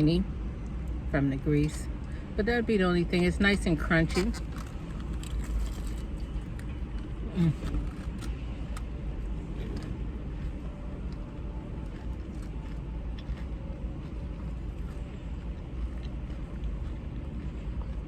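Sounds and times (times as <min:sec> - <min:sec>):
person chewing crispy food: 0:04.1 - 0:18.0.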